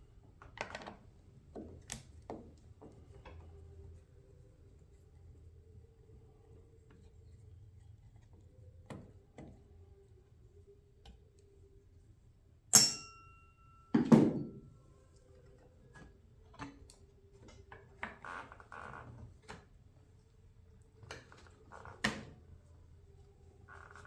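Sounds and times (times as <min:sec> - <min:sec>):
metal clink ringing: 0:12.8 - 0:14.6.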